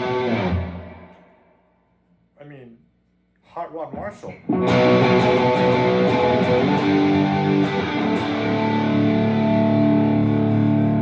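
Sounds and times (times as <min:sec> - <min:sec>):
overdriven electric guitar: 0:00.0 - 0:01.4, 0:04.4 - 0:11.0.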